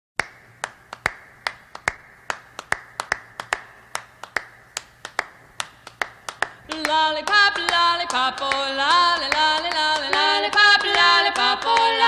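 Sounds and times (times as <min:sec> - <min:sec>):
finger snaps: 0:00.2 - 0:06.6
faint steady hum: 0:00.2 - 0:12.0.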